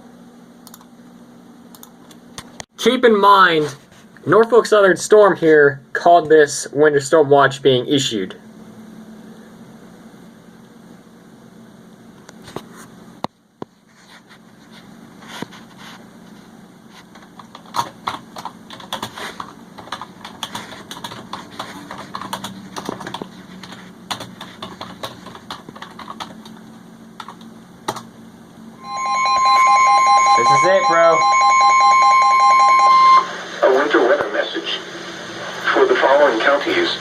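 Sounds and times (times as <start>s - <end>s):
irregular clicking and tapping: 17.1s - 26.6s.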